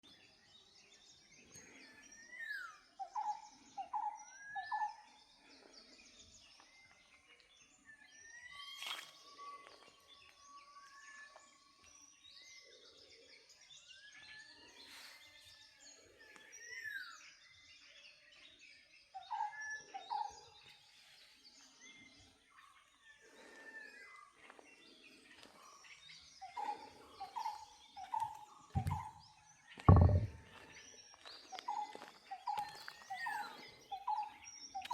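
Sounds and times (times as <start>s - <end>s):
birds calling and chirping: 0.0s - 34.9s
loud low thump: 28.8s - 29.0s, 29.9s - 30.4s.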